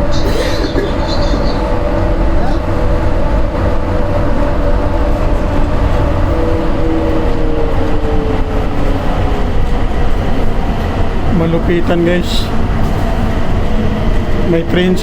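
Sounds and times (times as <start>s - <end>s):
train rumble with whine: 0.0s - 15.0s.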